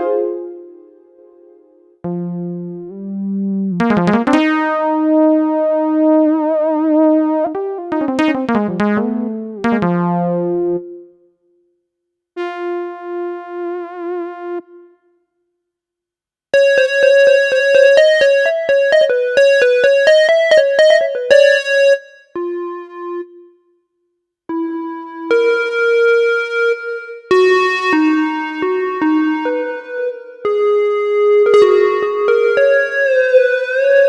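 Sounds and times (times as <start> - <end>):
keytar melody with vibrato: 16.6 - 22.8.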